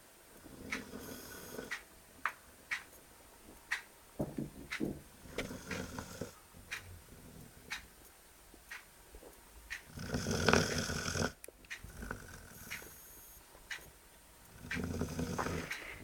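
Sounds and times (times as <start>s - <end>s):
dog snoring: 0.6s - 1.8s, 5.3s - 6.4s, 9.9s - 13.0s, 14.5s - 16.0s.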